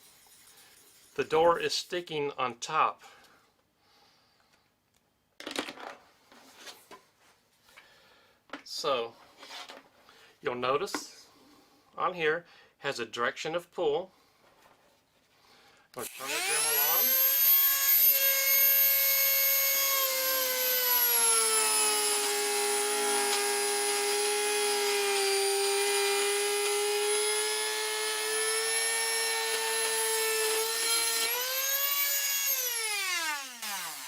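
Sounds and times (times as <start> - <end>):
rotary tool planing wood: 16.0 - 34.0.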